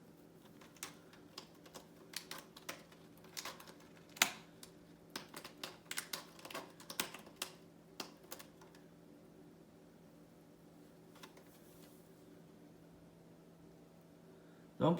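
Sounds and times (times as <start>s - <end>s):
cat claws scratching and clicking: 0.4s - 8.8s.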